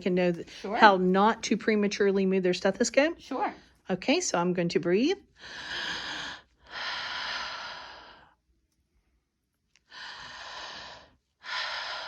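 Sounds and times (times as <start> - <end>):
woman breathing deeply: 5.4 - 8.4, 9.8 - 12.0.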